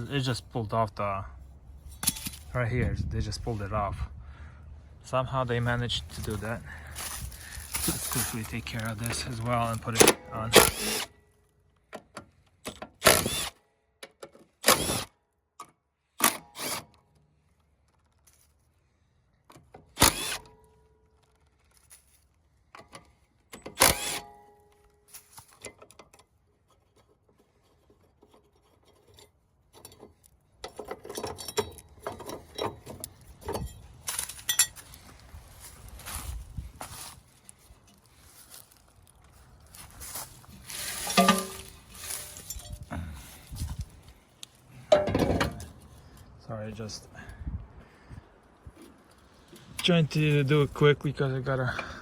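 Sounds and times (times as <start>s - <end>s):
scraping and rattling: 6.1s - 10.0s, 39.7s - 43.9s
tools knocking and clicking: 28.2s - 34.8s, 41.1s - 41.7s, 44.9s - 45.7s
metallic ring: 40.9s - 42.9s.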